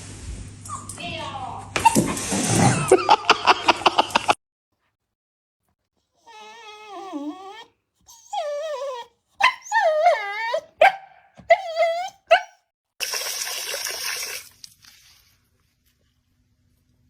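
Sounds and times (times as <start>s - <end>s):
dog whining and yowling: 6.2s - 12.6s.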